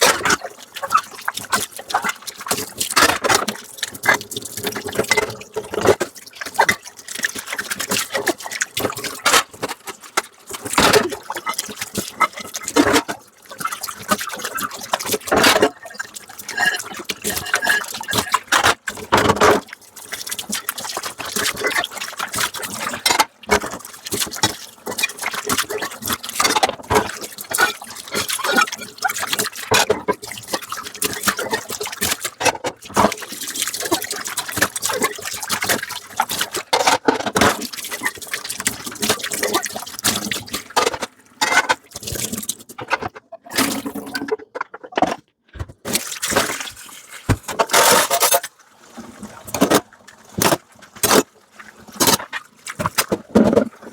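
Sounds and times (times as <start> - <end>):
tap water running and splashing: 0.0 - 45.0, 45.6 - 53.9
plates and utensils clattering: 15.3 - 19.6, 40.8 - 41.8, 47.4 - 48.4.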